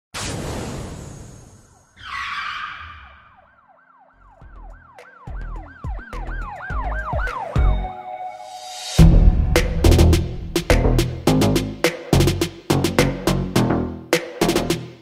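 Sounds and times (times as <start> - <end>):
siren-like yelp: 1.9 - 8.5
deep bass thumps: 9.0 - 13.3.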